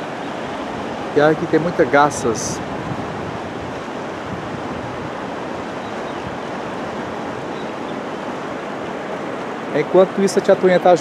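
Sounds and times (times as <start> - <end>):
waterfall rapids rushing: 0.0 - 11.0.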